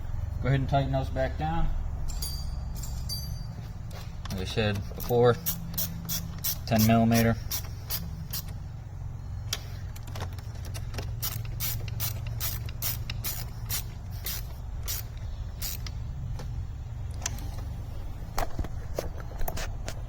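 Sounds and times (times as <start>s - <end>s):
steady low hum: 0.0s - 20.0s
ratchet wrench clicking: 4.9s - 8.6s, 10.0s - 16.0s.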